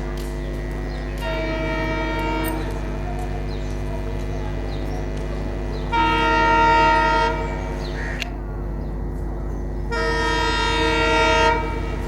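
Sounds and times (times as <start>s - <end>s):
locomotive air horn blast: 1.2s - 2.8s, 5.9s - 7.8s, 9.9s - 12.0s.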